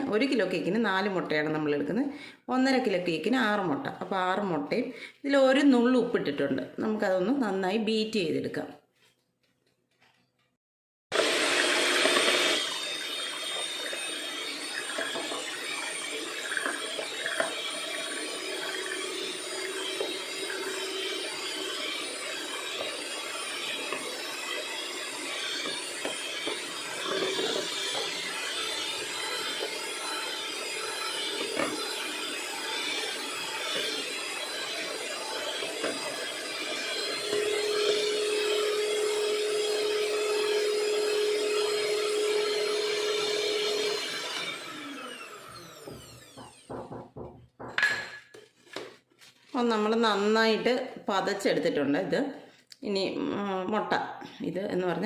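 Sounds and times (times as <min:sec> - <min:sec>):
electric mixer beating eggs: 0:00.0 - 0:01.8, 0:11.1 - 0:48.1.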